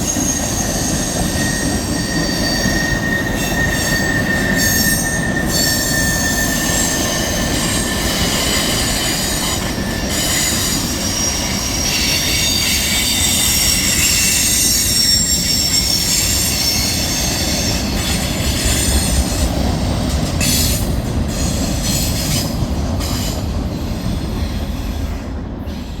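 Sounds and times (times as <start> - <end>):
high-pitched wheel squeal: 0.0 - 19.4
freight train rumbling on rails: 0.0 - 26.0.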